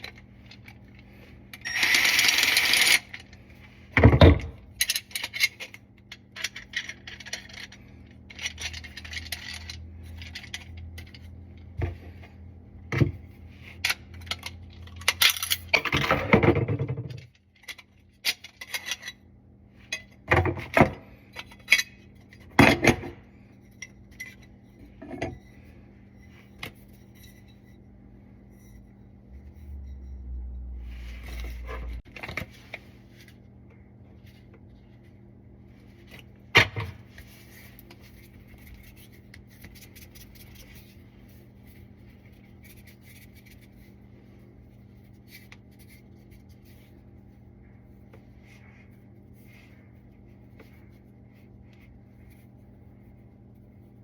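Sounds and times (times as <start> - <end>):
metal tools clinking and scraping: 23.4 - 27.8.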